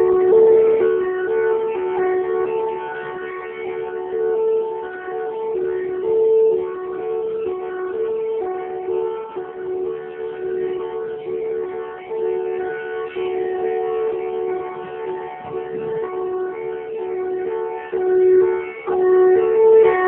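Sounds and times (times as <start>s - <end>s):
melodic line: 0.0s - 20.0s.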